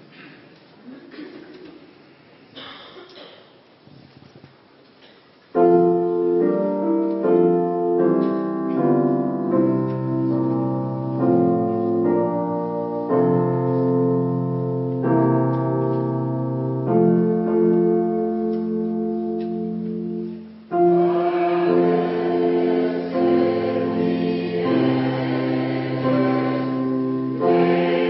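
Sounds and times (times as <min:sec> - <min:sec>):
piano playing sustained chords: 0:05.6 - 0:28.0.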